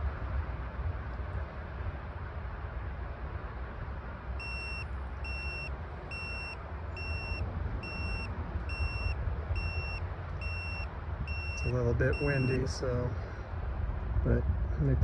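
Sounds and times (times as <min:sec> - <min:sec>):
wind rumble on microphone: 0:00.0 - 0:15.0
meter alarm beeping: 0:04.4 - 0:12.8.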